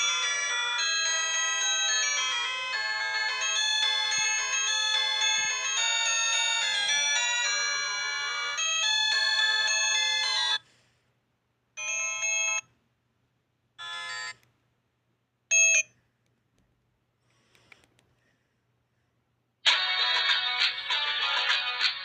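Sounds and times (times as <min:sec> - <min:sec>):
ringtone melody: 0:00.0 - 0:10.6, 0:19.7 - 0:22.0.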